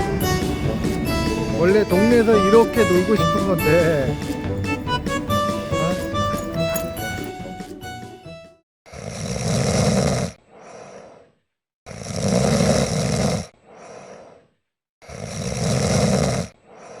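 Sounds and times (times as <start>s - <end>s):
dog snoring: 9.0s - 10.4s, 11.9s - 13.5s, 15.0s - 16.6s.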